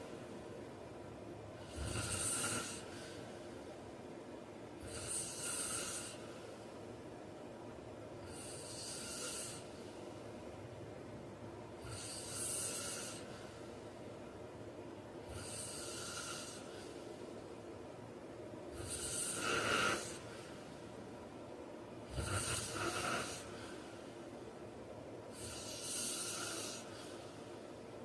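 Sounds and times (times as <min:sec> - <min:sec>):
man snoring: 0:01.6 - 0:03.0, 0:04.8 - 0:06.3, 0:08.2 - 0:09.7, 0:11.8 - 0:13.3, 0:15.3 - 0:16.7, 0:18.8 - 0:20.3, 0:22.1 - 0:23.6, 0:25.4 - 0:27.0.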